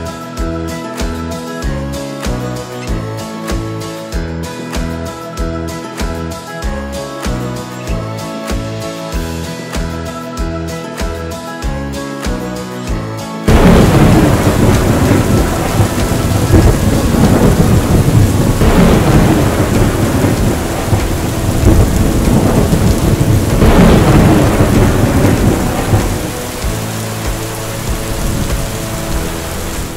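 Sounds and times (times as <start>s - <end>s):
heavy rain: 0.0s - 5.1s, 13.1s - 29.9s
rolling thunder: 13.5s - 29.9s.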